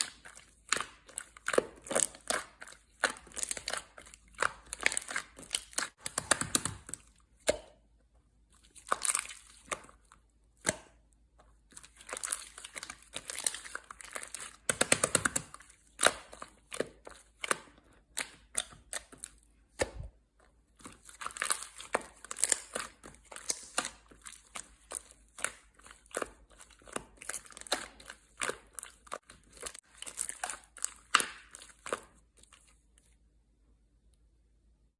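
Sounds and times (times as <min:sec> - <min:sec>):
slime squished by hand: 0:00.0 - 0:07.8, 0:08.4 - 0:33.1.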